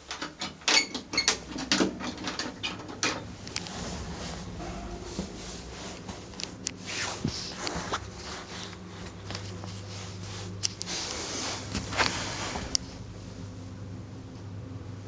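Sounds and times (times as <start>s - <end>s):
rustling and clicks from handling: 0.0s - 4.0s
steady low hum: 0.0s - 15.0s.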